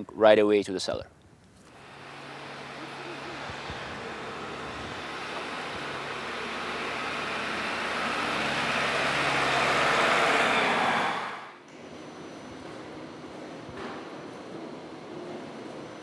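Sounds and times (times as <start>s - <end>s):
background noise: 0.0s - 1.7s
vehicle engine running: 1.7s - 11.4s.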